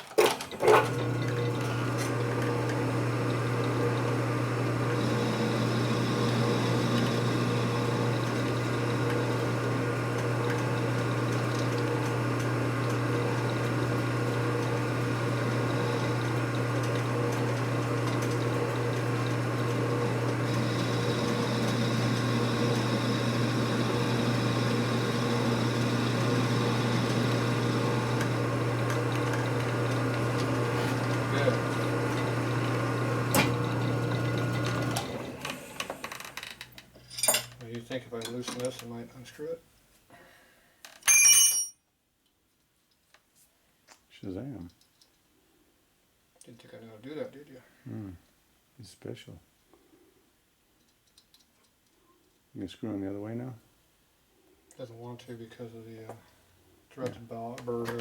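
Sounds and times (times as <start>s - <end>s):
shop machine humming: 0.5s - 36.4s
liquid pump: 4.7s - 13.7s, 14.7s - 32.0s.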